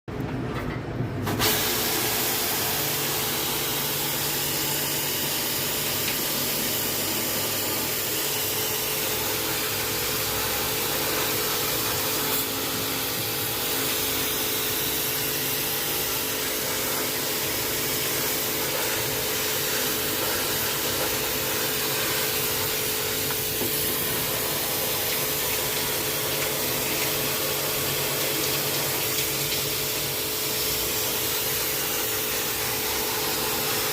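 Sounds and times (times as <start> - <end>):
pressure washer spraying water: 1.2 - 33.9.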